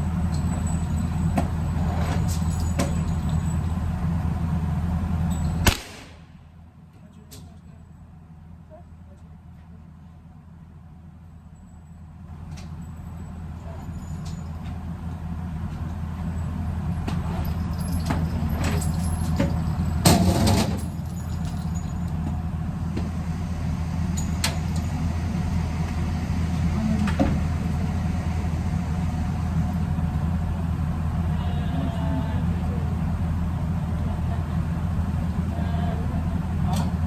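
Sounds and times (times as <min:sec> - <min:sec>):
car driving rumble: 0:12.3 - 0:37.0.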